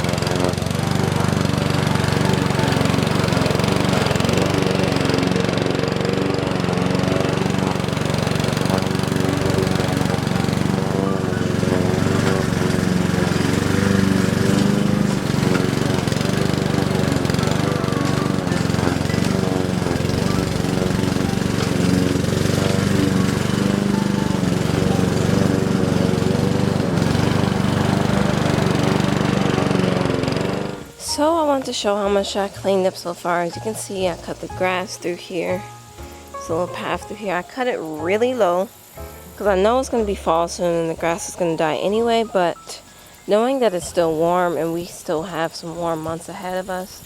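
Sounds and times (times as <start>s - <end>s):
grass cutter petrol engine running: 0.0s - 47.0s.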